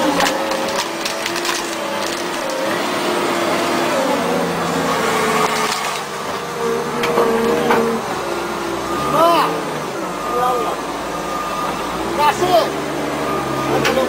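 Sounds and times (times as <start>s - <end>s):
wood cracking and splintering: 0.0s - 3.0s, 5.3s - 6.4s
bulldozer engine straining: 0.0s - 14.0s.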